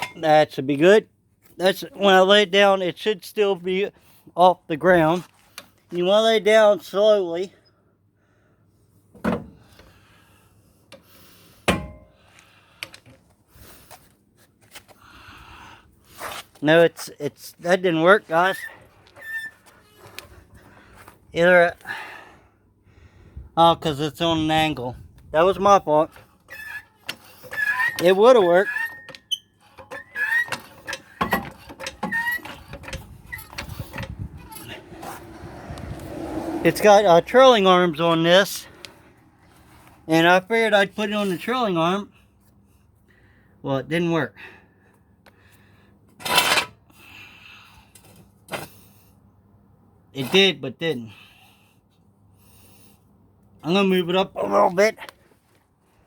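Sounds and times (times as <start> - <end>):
loud metal clunks: 11.7 - 12.1
high squeaks: 18.4 - 20.3, 26.5 - 35.6.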